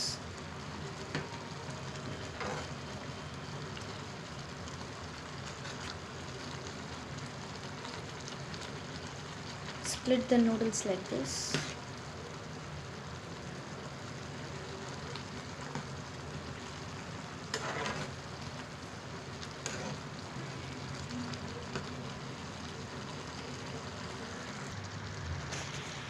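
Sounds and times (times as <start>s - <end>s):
noodles bubbling at the boil: 0.0s - 26.0s
spoon scraping a pan: 2.4s - 2.7s, 17.5s - 18.2s, 19.6s - 20.0s.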